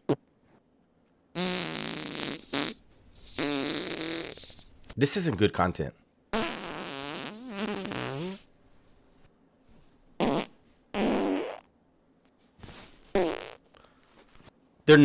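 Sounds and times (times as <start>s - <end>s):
farts: 0.0s - 0.3s, 1.4s - 4.7s, 6.3s - 8.5s, 10.2s - 11.7s, 12.6s - 14.5s.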